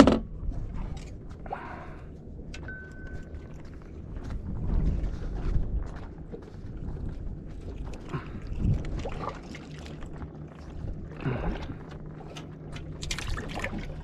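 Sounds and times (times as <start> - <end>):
wind: 0.0 - 14.0
water lapping: 6.2 - 14.0.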